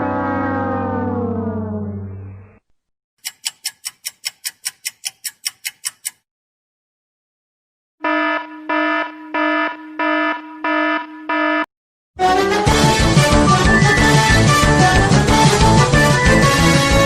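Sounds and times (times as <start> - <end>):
pulsing warning tone: 8.0 - 11.7
alarm clock beeping: 8.1 - 11.7.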